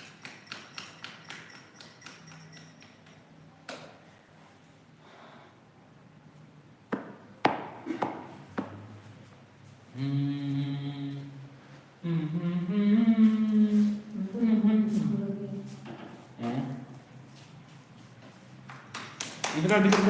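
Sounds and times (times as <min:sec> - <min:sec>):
person humming: 0:09.9 - 0:15.7, 0:16.4 - 0:17.0.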